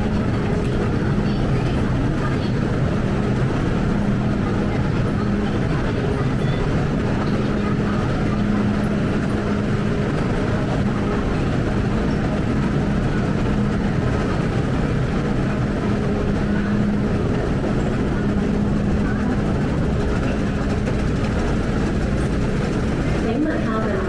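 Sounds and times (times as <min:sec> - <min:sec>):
train running noise: 0:00.0 - 0:24.0.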